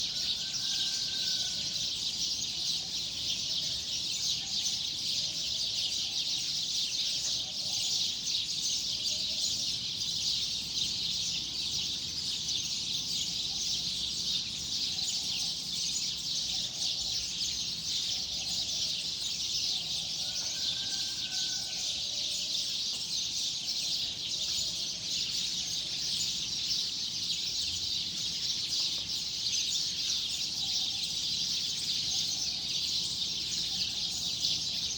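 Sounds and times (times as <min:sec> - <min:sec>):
small birds chirping: 0:09.0 - 0:34.9.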